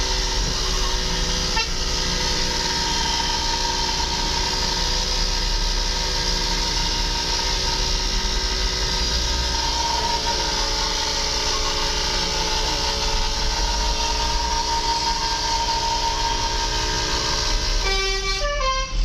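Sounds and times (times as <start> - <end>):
multi-tone air horns: 0.0 - 3.8, 9.2 - 19.0
vehicle engine drone: 0.0 - 19.0.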